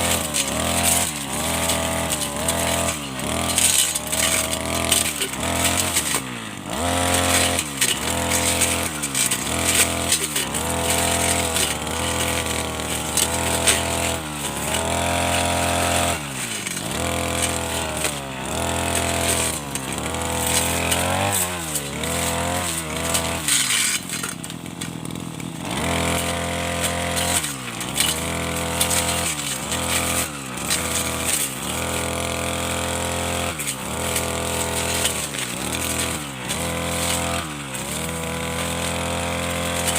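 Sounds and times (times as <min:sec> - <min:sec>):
brush cutter engine revving: 0:00.0 - 0:39.9.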